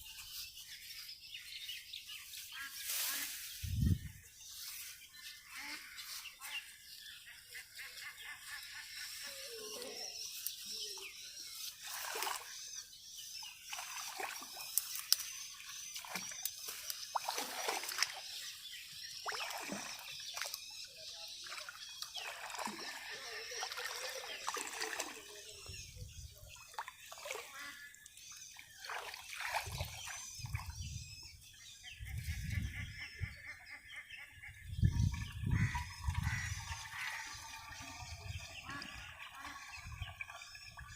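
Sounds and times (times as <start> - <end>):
pond water splashing: 4.5 - 30.8, 34.9 - 40.9.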